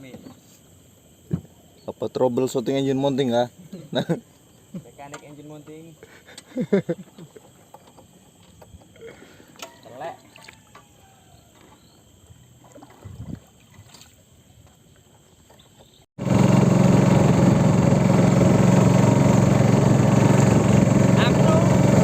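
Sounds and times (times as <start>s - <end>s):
small boat engine running: 10.2s - 14.1s, 15.0s - 22.0s.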